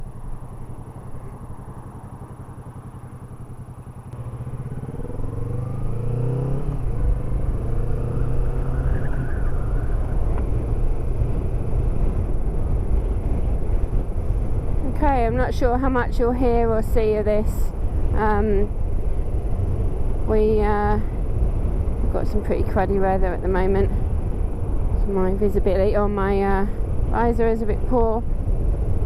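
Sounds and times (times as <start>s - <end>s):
motorcycle engine accelerating: 0.0s - 16.0s
wind rumble on microphone: 4.1s - 29.0s.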